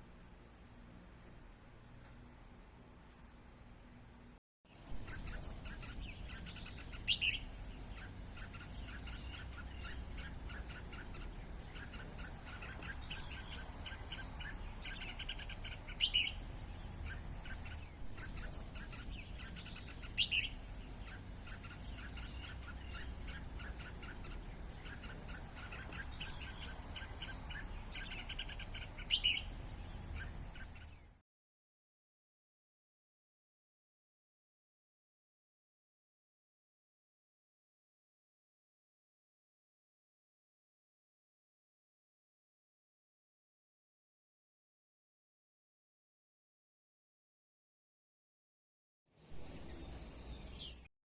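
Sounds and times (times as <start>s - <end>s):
birds chirping: 4.7s - 31.2s, 49.2s - 50.9s
sharp bird calls: 4.8s - 31.2s.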